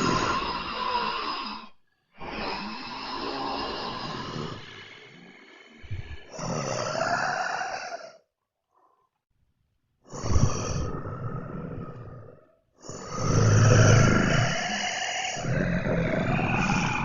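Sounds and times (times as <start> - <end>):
zombies groaning and growling: 0.0 - 8.2, 12.9 - 17.0.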